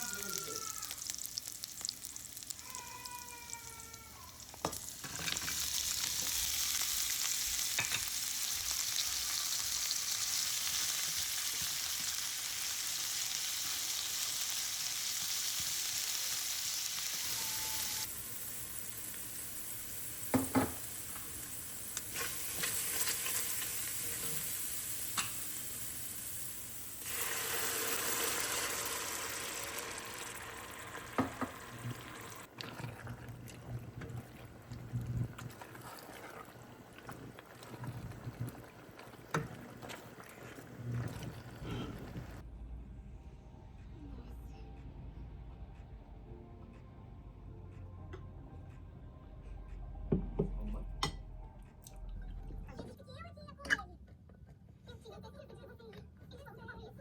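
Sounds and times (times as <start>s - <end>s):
food sizzling in a frying pan: 0.0s - 33.0s, 33.6s - 42.4s.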